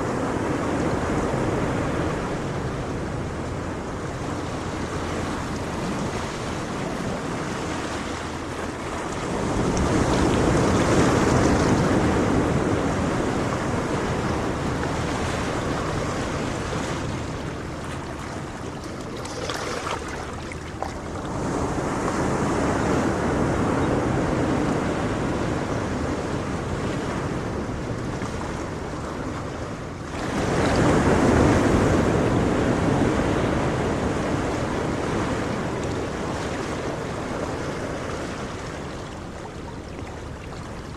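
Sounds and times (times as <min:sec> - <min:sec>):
ocean waves breaking: 0:00.0 - 0:40.9.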